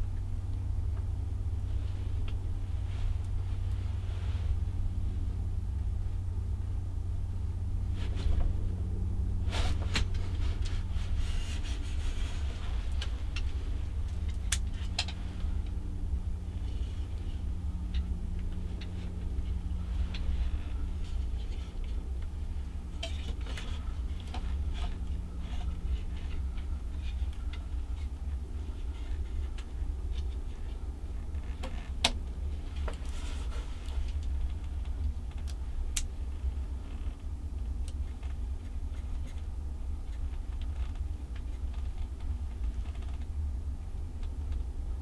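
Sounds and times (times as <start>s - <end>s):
low wind rumble: 0.0s - 45.0s
light irregular ticks and taps: 12.9s - 15.8s, 23.0s - 33.2s, 33.8s - 43.4s, 44.2s - 44.7s
faint light ticks: 33.8s - 36.1s.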